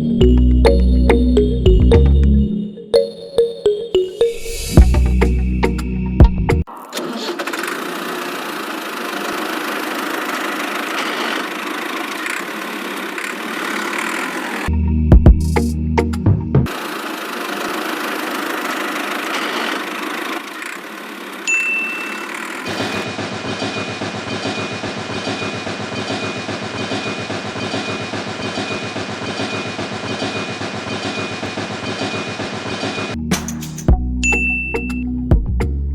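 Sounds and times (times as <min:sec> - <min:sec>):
small motor rattling: 0:06.8 - 0:14.7, 0:16.7 - 0:33.2.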